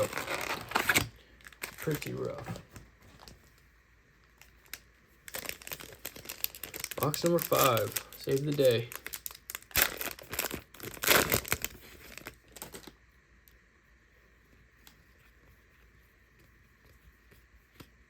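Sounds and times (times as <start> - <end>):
wrapping crinkling and tearing: 0.0 - 3.6, 4.2 - 13.0.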